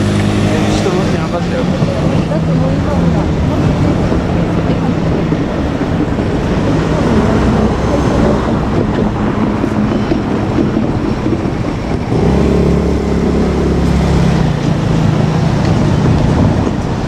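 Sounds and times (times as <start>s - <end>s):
train motors humming: 0.0s - 17.0s
train wheels rumbling on rail: 0.0s - 17.0s.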